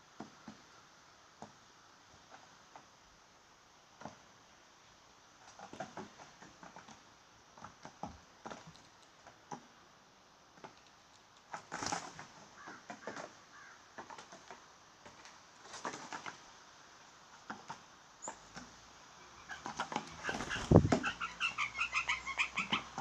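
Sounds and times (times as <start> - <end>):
birds clicking and tapping at feeder: 10.6 - 16.4, 19.4 - 23.0
quiet bird calls: 12.4 - 14.0, 19.1 - 23.0.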